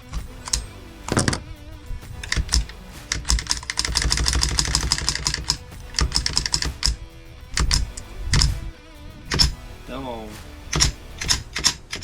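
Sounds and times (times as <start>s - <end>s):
rifle action clicking and rattling: 0.2s - 1.5s, 2.2s - 7.0s, 7.6s - 8.6s, 10.7s - 12.0s.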